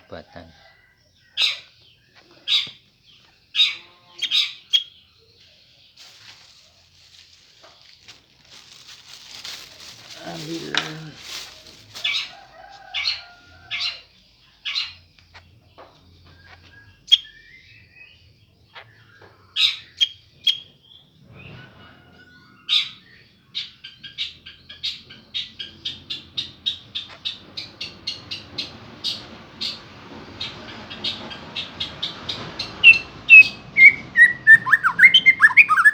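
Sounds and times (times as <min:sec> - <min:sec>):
bird clicking calls: 0:32.6 - 0:35.9
bird whistled notes: 0:32.8 - 0:35.9.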